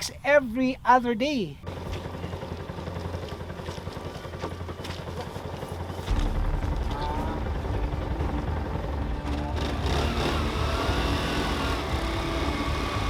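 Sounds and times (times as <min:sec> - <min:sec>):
motorcycle engine puttering: 0:08.0 - 0:13.0.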